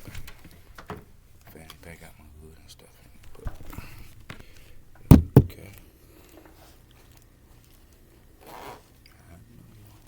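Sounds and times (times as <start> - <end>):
zipper pulled open: 8.4 - 8.8.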